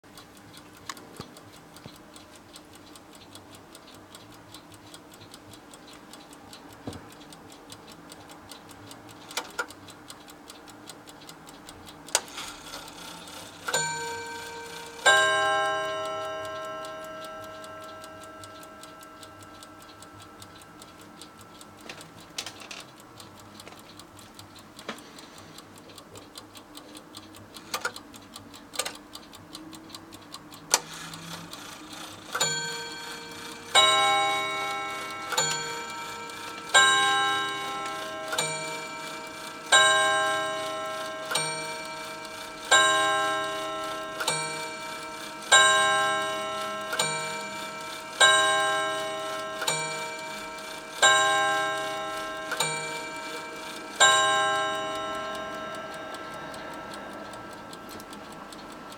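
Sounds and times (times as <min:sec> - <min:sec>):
clock ticking: 0:00.0 - 0:58.9
clock chime striking: 0:13.7 - 0:20.0, 0:32.4 - 0:56.9.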